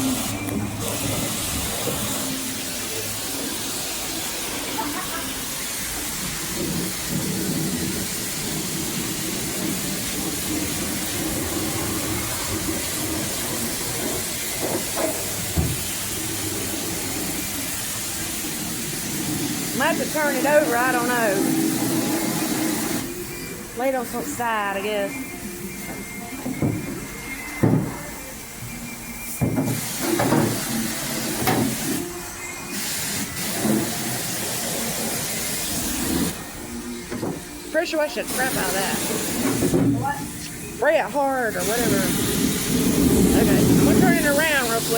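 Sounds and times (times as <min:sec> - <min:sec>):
water splattering: 0:00.0 - 0:23.1, 0:40.5 - 0:44.9
pressure washer spray hissing: 0:00.0 - 0:25.2, 0:29.2 - 0:32.0, 0:32.7 - 0:36.6, 0:37.7 - 0:44.9.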